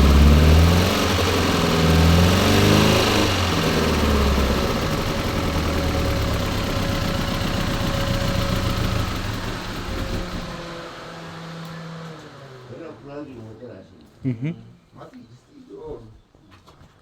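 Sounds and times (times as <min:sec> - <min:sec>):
car engine idling: 0:00.0 - 0:13.4.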